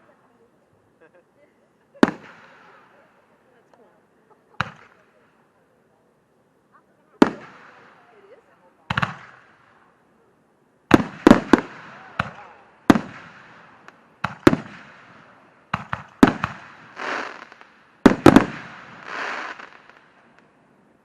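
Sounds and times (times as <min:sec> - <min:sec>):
fireworks bangs with echo: 0:02.0 - 0:03.1, 0:04.6 - 0:05.0, 0:07.2 - 0:09.8, 0:10.9 - 0:20.4
fireworks hissing crackle: 0:10.9 - 0:20.6.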